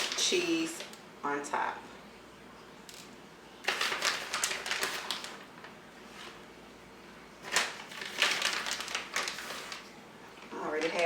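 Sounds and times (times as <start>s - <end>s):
plastic packaging crinkling: 0.0s - 0.9s, 3.6s - 6.4s, 7.4s - 11.0s.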